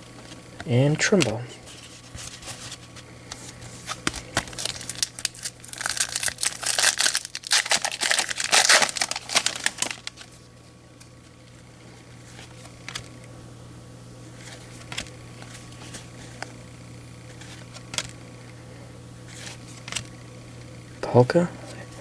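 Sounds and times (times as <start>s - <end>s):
card pack wrapper crinkling: 1.0s - 10.4s.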